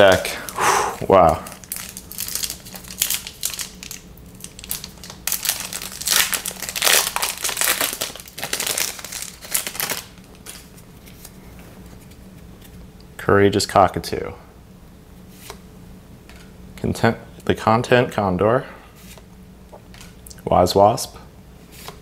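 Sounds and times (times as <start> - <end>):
foil wrapper crinkling and tearing: 1.4 - 10.7.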